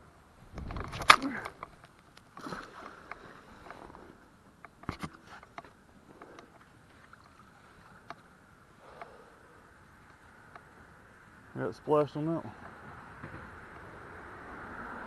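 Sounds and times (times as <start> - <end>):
water noise: 0.0 - 11.6.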